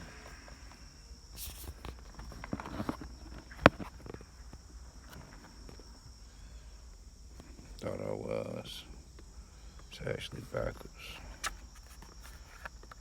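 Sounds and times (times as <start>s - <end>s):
crickets chirring: 0.0s - 13.0s
plastic console knocks and clicks: 1.5s - 4.3s.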